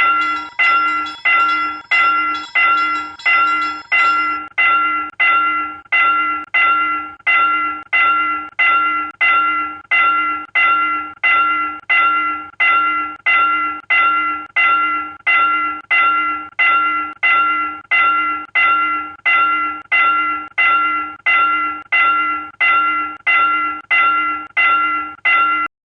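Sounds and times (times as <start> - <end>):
railroad crossing bell ringing: 0.0 - 4.4.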